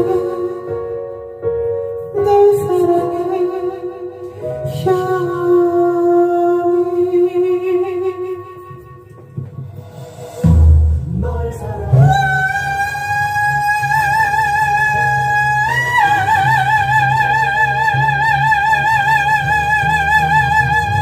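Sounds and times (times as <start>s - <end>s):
man singing high shouted note: 11.1s - 16.3s.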